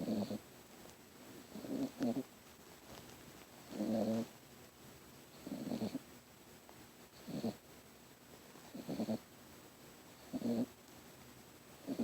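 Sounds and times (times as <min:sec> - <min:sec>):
puppy snoring: 0:00.0 - 0:00.5, 0:01.4 - 0:02.3, 0:03.7 - 0:04.3, 0:05.3 - 0:06.1, 0:07.1 - 0:07.6, 0:08.7 - 0:09.3, 0:10.2 - 0:10.8, 0:11.8 - 0:12.0.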